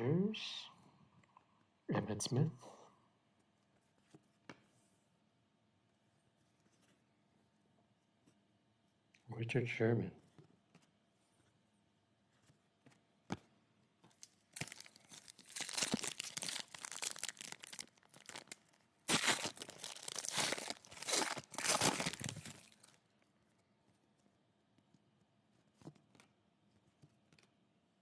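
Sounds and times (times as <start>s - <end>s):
foil wrapper tearing and crinkling: 14.2s - 23.0s.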